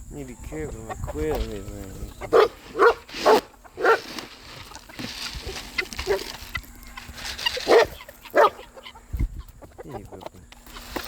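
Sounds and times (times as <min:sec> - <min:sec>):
quiet animal noises: 0:00.0 - 0:11.0
dog barking: 0:02.3 - 0:04.2, 0:05.4 - 0:06.3, 0:07.6 - 0:08.7.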